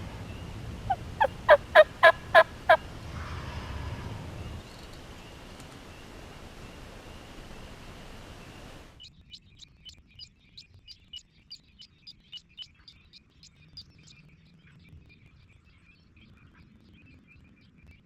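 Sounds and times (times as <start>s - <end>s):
small bird chirping: 0.3s - 2.8s.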